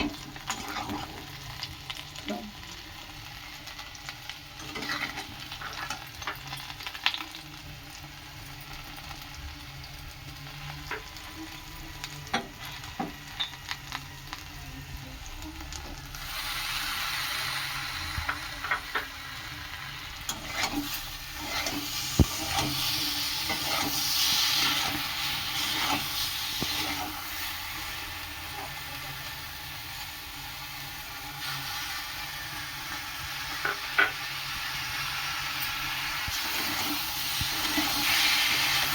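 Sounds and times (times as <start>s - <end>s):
curry sizzling in a pan: 0.0s - 38.9s
spoon scraping and knocking pan: 20.3s - 27.2s, 33.5s - 34.2s.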